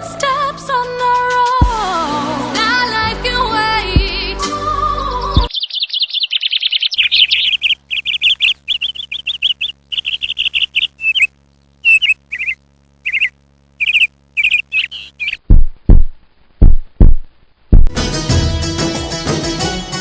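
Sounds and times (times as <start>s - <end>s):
deep beat: 1.6s - 4.5s, 15.5s - 20.0s
small bird chirping: 5.5s - 15.5s.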